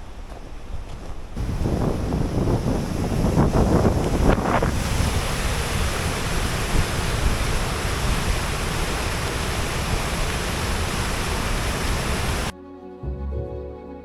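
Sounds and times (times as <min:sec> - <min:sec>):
large waterfall rushing: 0:01.4 - 0:12.5.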